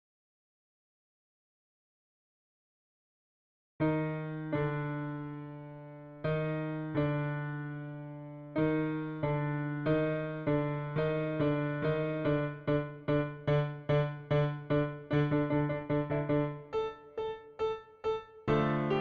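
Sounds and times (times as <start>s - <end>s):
slow piano notes: 3.8s - 19.0s.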